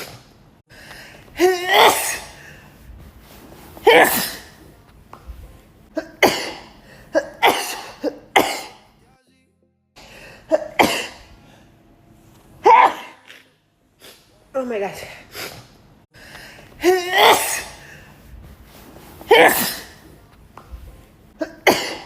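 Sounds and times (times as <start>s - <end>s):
quick breaths: 0.7s - 1.3s, 15.3s - 16.8s
woman sneezing: 1.4s - 2.4s, 3.8s - 4.6s, 5.9s - 8.8s, 12.6s - 14.3s, 16.8s - 17.9s, 19.2s - 20.0s, 21.4s - 22.0s.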